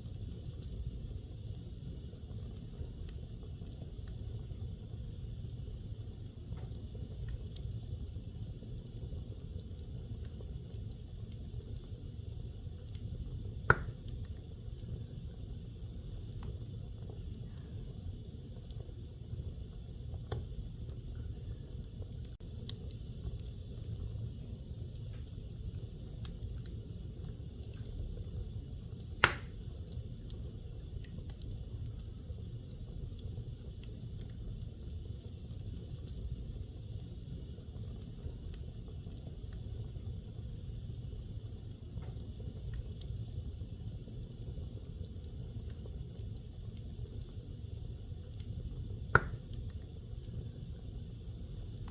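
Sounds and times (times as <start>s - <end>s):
fire crackling: 0.0s - 51.9s
fire flames rumbling: 0.0s - 51.9s
loud sharp pop from fire: 13.6s - 14.1s, 29.1s - 29.8s, 49.1s - 49.6s.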